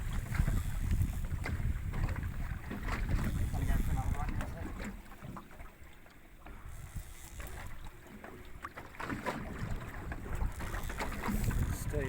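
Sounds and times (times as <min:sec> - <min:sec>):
wind buffeting microphone: 0:00.0 - 0:05.0, 0:09.4 - 0:12.0
boat motor rumbling: 0:00.0 - 0:12.0.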